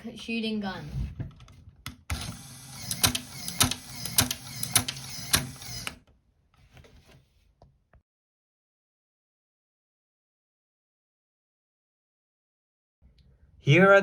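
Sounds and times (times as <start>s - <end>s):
sharp clicks: 1.9s - 6.0s.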